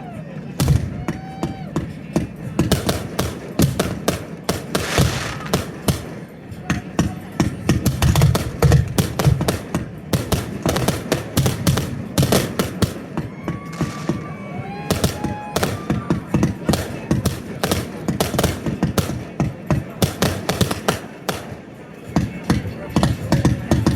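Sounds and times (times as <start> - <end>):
fireworks bangs and crackles: 0.1 - 23.9
deep fireworks booms: 0.4 - 23.9.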